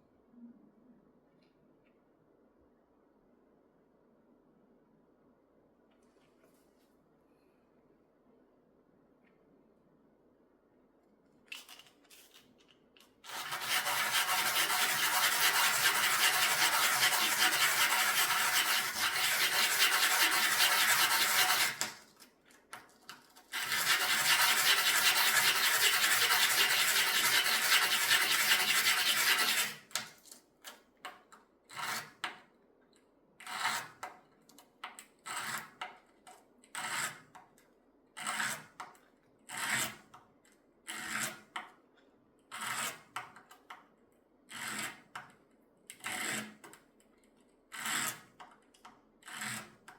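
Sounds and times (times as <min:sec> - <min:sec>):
sanding jewelry: 0:13.3 - 0:21.8, 0:23.6 - 0:29.8.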